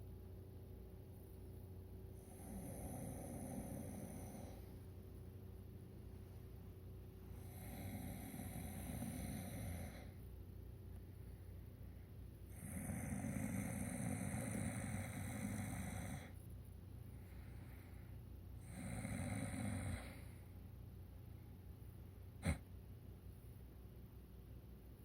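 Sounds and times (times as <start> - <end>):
man snoring: 2.2 - 4.7, 7.3 - 10.2, 12.5 - 16.4, 18.6 - 20.3, 22.4 - 22.6.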